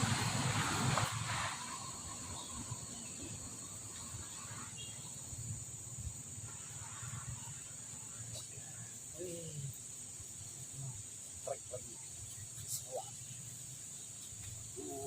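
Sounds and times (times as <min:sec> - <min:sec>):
insects buzzing: 0:00.0 - 0:15.0.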